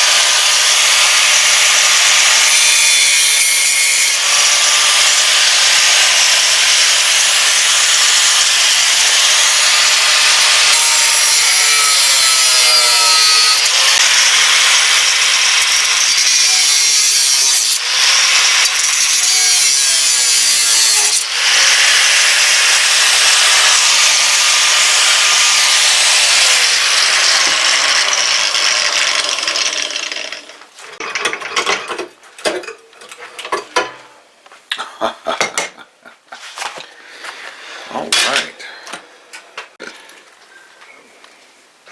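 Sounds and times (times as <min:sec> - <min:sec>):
power tool working on metal: 0:00.0 - 0:30.6
metal clicks and knocks: 0:31.0 - 0:34.0.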